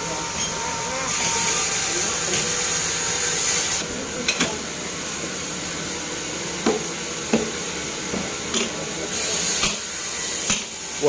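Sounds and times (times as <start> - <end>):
sawmill machinery hissing: 0.0 - 3.9, 9.0 - 11.0.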